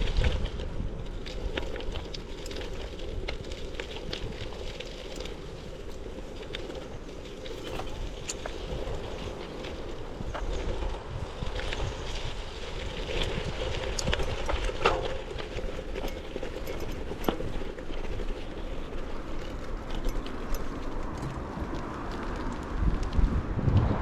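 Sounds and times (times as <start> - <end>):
wheels clicking on rails: 0.0 - 23.6.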